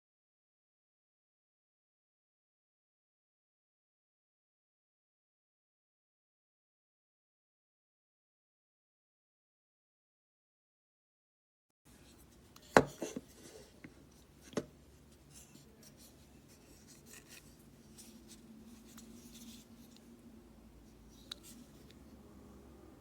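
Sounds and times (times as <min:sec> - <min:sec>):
faint rubbing and scraping: 0:11.9 - 0:22.2.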